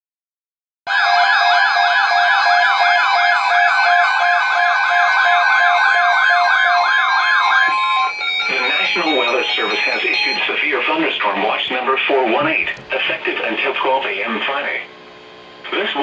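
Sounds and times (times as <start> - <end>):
steady electronic tone: 0.9 - 11.6
emergency alert siren wail: 0.9 - 11.7.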